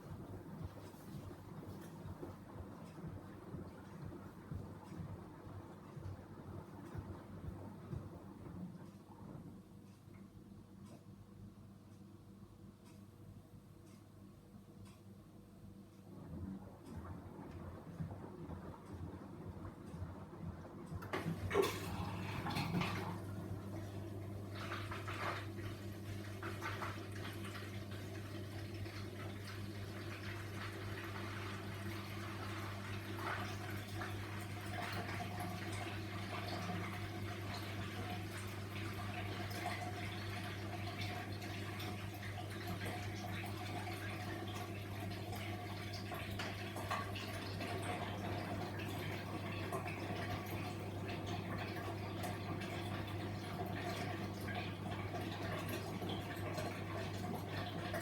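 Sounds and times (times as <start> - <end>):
washing machine hum: 0.0 - 58.0
water splashing in washing machine: 21.0 - 58.0.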